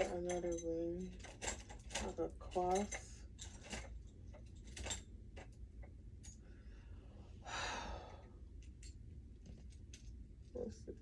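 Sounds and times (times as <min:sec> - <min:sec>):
person sighing: 0:07.4 - 0:08.2.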